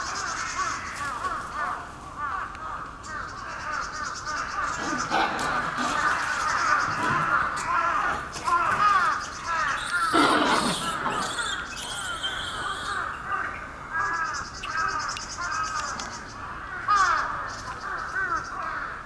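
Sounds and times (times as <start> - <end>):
rough monkey call: 3.5 - 17.3
monkeys coo calling: 4.4 - 15.1.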